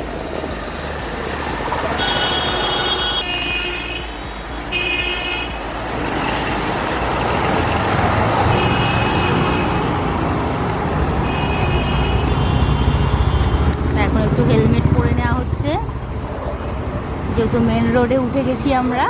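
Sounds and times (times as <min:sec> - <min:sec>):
car horns: 0:00.0 - 0:15.3
road traffic rumble: 0:00.0 - 0:19.0.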